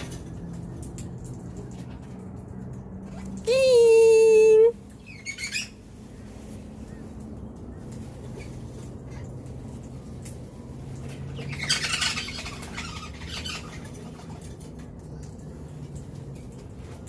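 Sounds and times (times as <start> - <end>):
parrot squawking: 5.0 - 5.8, 11.4 - 14.2.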